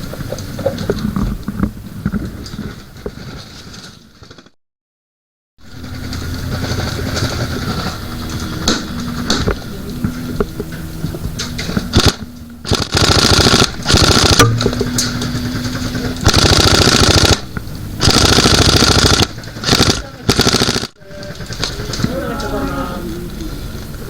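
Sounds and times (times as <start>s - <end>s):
airsoft gun rapid fire: 11.9s - 21.7s.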